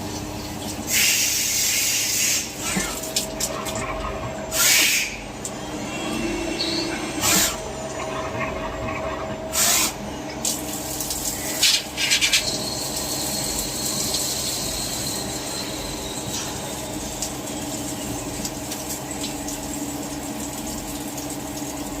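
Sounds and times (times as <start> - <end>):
machine humming: 2.6 - 19.6
high steady whine: 3.7 - 9.6.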